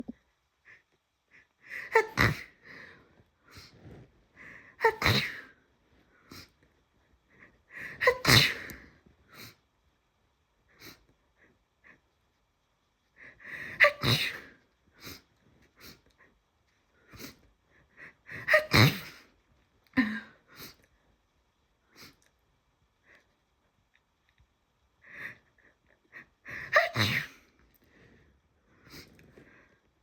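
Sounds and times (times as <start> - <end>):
sniffs and breaths: 0.7 - 4.8, 25.0 - 30.0
person sneezing: 8.0 - 8.7, 26.7 - 27.4.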